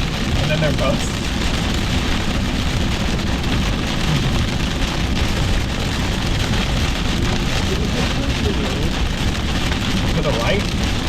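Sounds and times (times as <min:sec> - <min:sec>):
heavy rain drumming on car: 0:00.0 - 0:11.0
tyre and road noise: 0:00.0 - 0:11.0.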